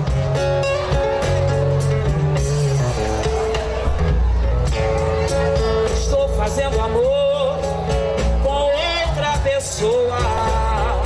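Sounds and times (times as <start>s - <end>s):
live band with strong bass: 0.0s - 11.0s.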